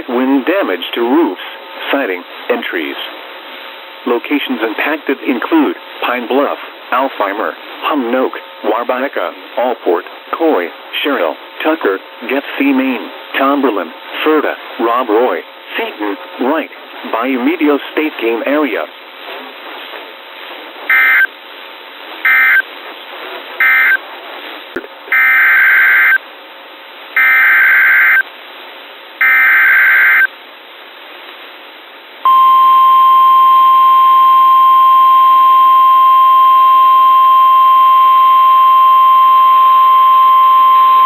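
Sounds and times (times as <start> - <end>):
faint radio hiss: 0.0 - 25.0
loud steady alarm tone: 32.3 - 41.0.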